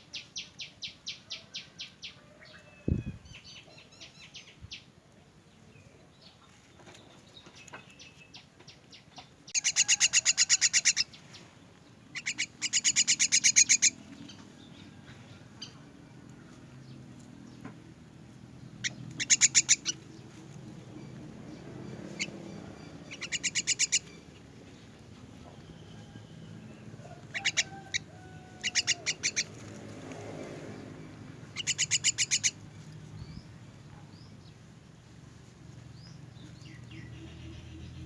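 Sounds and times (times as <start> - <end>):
myna chick begging calls: 9.5 - 11.2, 12.1 - 14.1, 18.8 - 20.1, 23.0 - 24.2, 27.1 - 29.6, 31.5 - 32.6.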